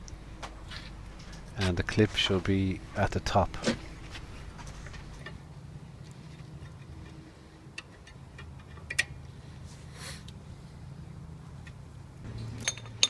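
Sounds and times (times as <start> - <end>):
metallic clicks of brake pads: 6.1 - 9.4.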